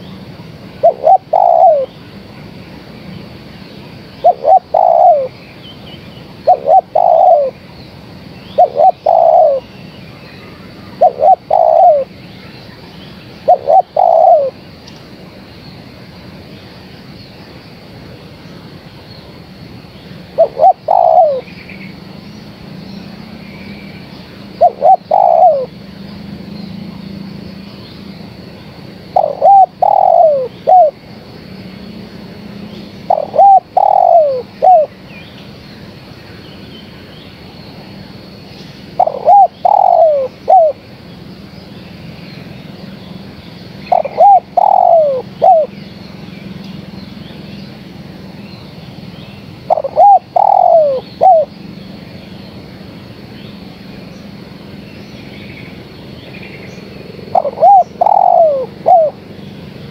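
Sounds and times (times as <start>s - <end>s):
faint steady hum: 0.0s - 59.9s
dove cooing: 0.8s - 1.9s, 4.2s - 5.4s, 6.4s - 7.6s, 8.6s - 9.7s, 10.9s - 12.1s, 13.4s - 14.6s, 20.3s - 21.5s, 24.5s - 25.8s, 29.1s - 31.0s, 33.0s - 34.9s, 39.0s - 40.8s, 43.9s - 45.8s, 49.6s - 51.5s, 57.1s - 59.2s.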